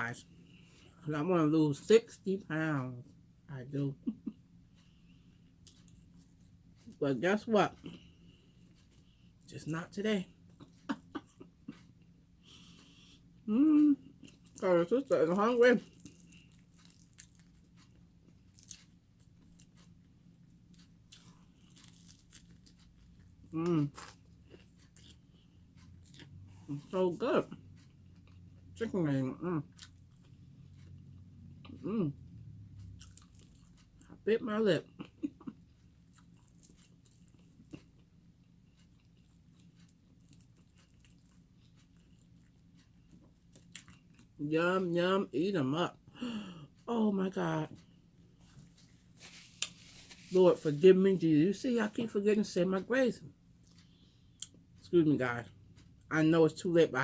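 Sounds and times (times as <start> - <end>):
low steady hum: 0.0 - 57.0
person chewing and crunching: 4.8 - 34.2, 34.8 - 44.9, 47.6 - 50.9, 53.6 - 54.6.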